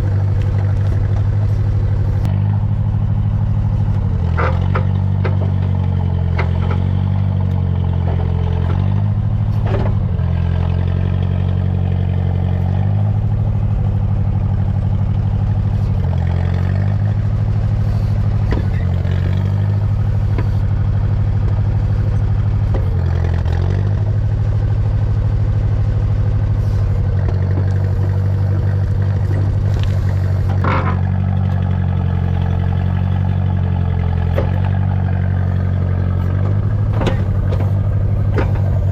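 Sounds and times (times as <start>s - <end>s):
backhoe engine running: 0.0s - 38.9s
metal clanks and scrapes: 4.2s - 5.6s, 27.4s - 31.8s, 36.3s - 38.9s.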